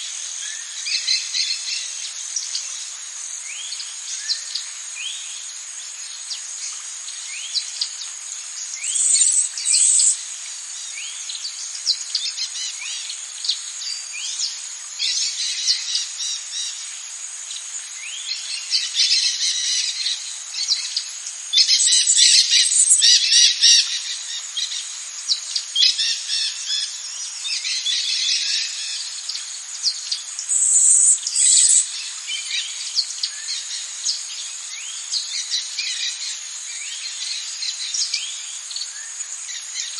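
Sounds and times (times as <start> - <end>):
high-pitched insect drone: 0.0 - 39.9
birds chirping and calling: 8.8 - 10.2, 18.1 - 34.2.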